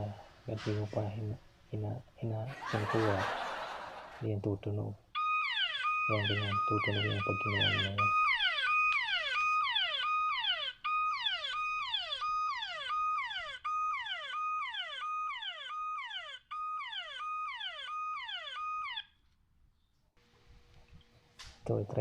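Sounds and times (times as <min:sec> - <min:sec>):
phone alarm sliding tone: 0:05.2 - 0:19.0.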